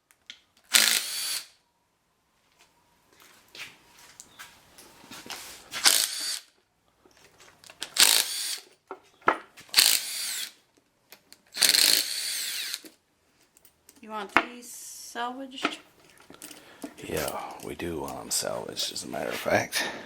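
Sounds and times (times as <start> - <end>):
power drill whirring: 0.6 - 1.6, 5.6 - 6.5, 7.8 - 8.7, 9.7 - 10.6, 11.4 - 13.0.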